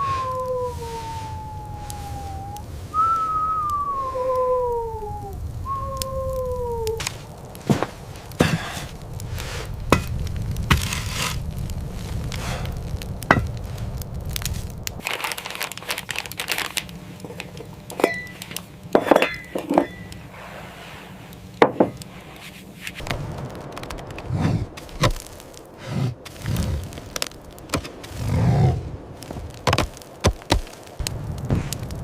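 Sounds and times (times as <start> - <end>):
sharp cracks: 0.0 - 20.3, 21.3 - 32.0
low rumble: 0.0 - 22.4, 23.0 - 32.0
crinkling crunching noises: 0.0 - 32.0.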